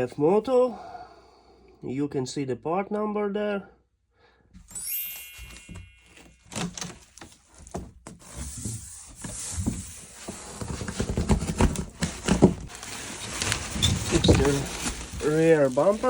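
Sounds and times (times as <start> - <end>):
packaging rustling: 5.3 - 7.9, 9.0 - 16.0.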